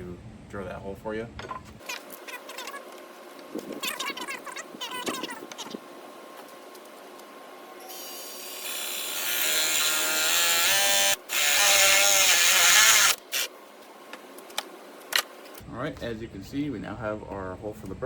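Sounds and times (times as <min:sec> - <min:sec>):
power drill boring through wood: 0:07.9 - 0:13.5.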